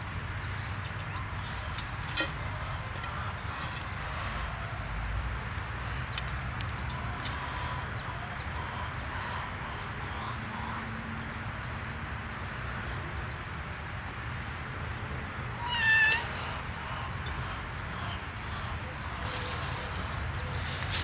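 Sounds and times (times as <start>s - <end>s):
loud animal cry: 15.4s - 17.6s.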